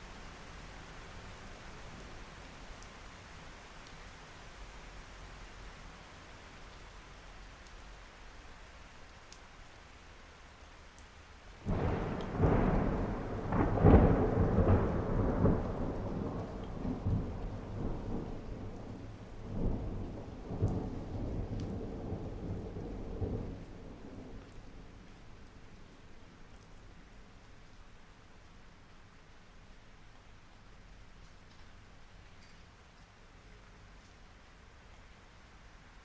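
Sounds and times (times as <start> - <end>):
steady rain: 0.0 - 36.0
thunder clap and rumble: 11.6 - 24.5.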